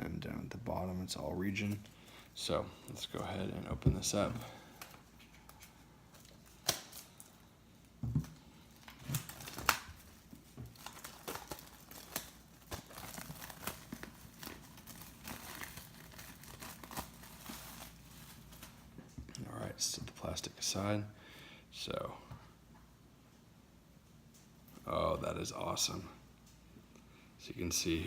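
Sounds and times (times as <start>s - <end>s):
plastic wrapping tearing: 8.7s - 18.9s
plastic wrapping crinkling: 8.7s - 19.2s.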